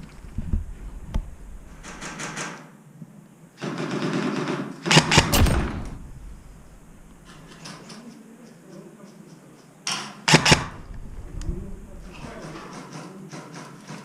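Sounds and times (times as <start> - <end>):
airsoft gun shots: 3.6 - 6.8, 10.3 - 10.8
sharp thuds: 4.9 - 7.5.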